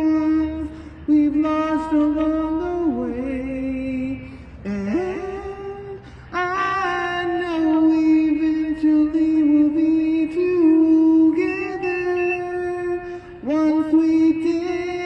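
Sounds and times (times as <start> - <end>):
person singing wordlessly: 0.0 - 15.0.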